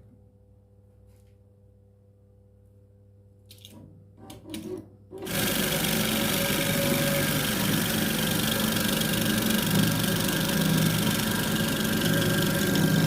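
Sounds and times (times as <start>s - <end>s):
coil winding machine running: 5.2s - 13.0s.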